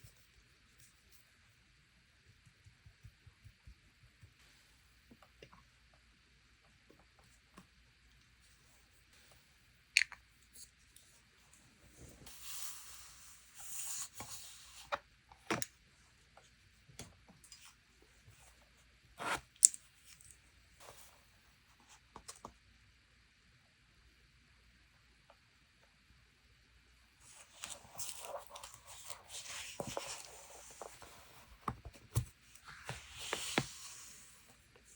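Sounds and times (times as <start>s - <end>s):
paper rustling: 27.2s - 34.4s.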